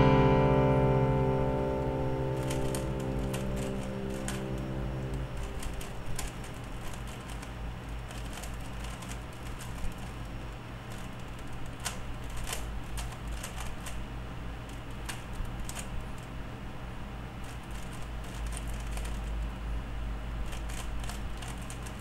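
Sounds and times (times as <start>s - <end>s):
low steady hum: 0.0s - 22.0s
puzzle cube clicking: 2.3s - 7.5s, 8.1s - 10.3s, 10.9s - 14.0s, 17.4s - 19.3s, 20.5s - 22.0s.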